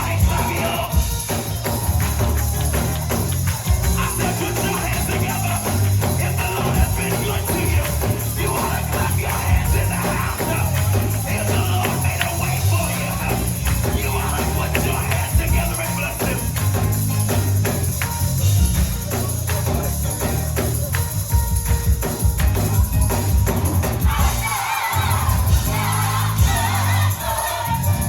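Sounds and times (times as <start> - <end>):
voices singing over band: 0.0 - 17.1, 23.8 - 28.0
live gospel band music: 0.0 - 28.0.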